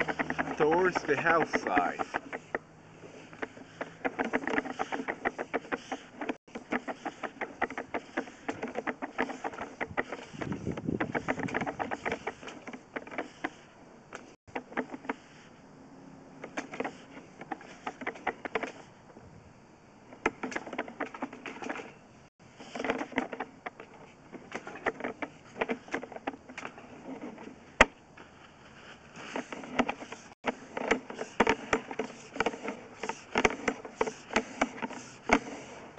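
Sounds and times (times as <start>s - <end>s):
inspection camera clicking and rattling: 0.0s - 13.6s.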